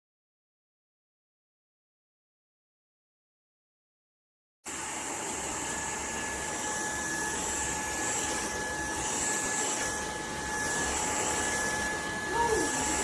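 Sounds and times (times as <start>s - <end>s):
stick vacuum running: 4.7s - 13.0s.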